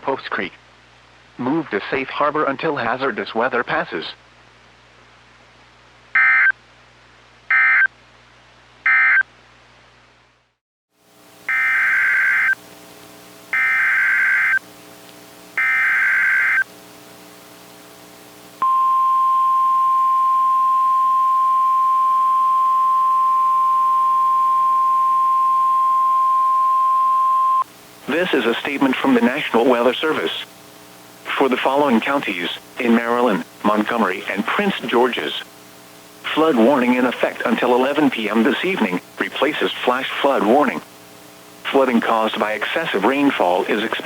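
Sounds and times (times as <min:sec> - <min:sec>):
short buzzing data bursts: 0:06.2 - 0:06.6, 0:11.5 - 0:12.6, 0:13.5 - 0:14.6, 0:15.6 - 0:16.7
steady alarm tone: 0:11.5 - 0:12.6, 0:13.6 - 0:14.6, 0:15.6 - 0:16.7, 0:18.6 - 0:27.6
digital header data bursts: 0:15.6 - 0:16.6.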